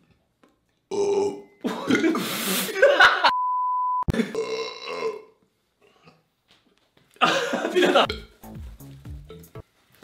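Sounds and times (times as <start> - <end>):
man burping loudly: 0.9 - 2.2, 4.1 - 5.4, 8.0 - 8.4
high beep: 3.3 - 4.1.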